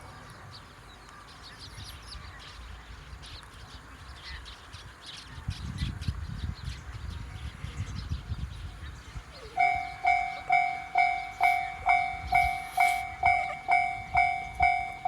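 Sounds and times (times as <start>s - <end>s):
train rumble: 7.1s - 15.0s
short high-pitched crossing signal: 9.4s - 15.0s.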